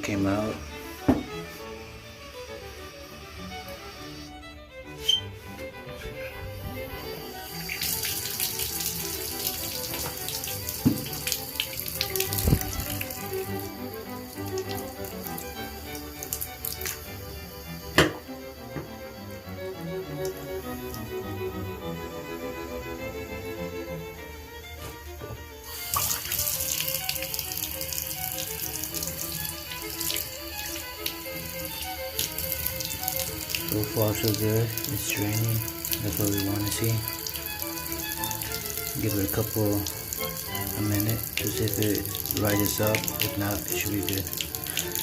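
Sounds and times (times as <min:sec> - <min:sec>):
background music: 0:00.0 - 0:45.0
tap water running: 0:00.0 - 0:45.0.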